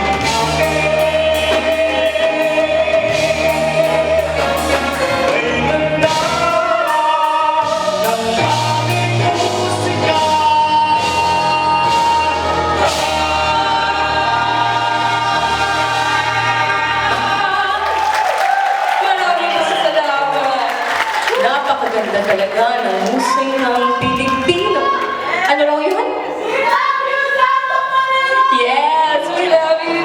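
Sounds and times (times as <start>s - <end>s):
bass notes: 0.0s - 18.0s
vocal group singing in harmony: 0.0s - 18.7s
band playing: 0.0s - 25.4s.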